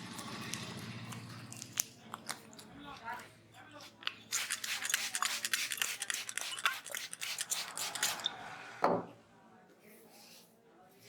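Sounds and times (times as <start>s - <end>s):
wet crackling and rubbing of hair: 0.1s - 8.3s.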